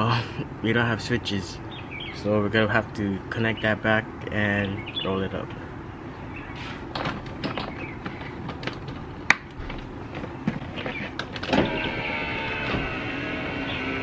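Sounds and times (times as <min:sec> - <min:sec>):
scattered clicks and knocks: 0:06.9 - 0:11.7
power window motor whine: 0:10.8 - 0:14.0.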